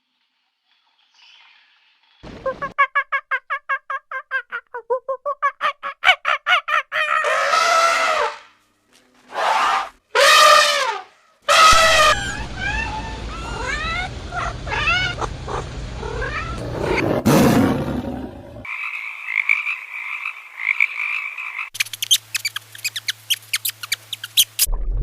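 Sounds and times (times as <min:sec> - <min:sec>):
wailing animal cries: 0:06.8 - 0:08.4, 0:09.3 - 0:17.2
low hum: 0:11.8 - 0:18.6
short rising animal chirps: 0:21.8 - 0:24.7.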